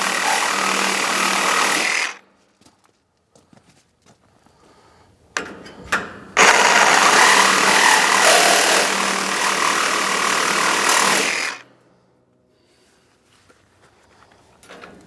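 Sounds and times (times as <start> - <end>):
reciprocating saw cutting metal: 0.0 - 2.2, 6.4 - 11.6.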